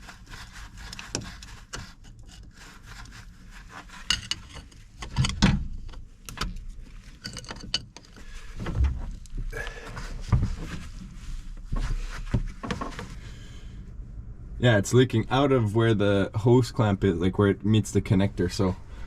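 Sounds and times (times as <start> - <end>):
heavy thumps: 8.6 - 11.0.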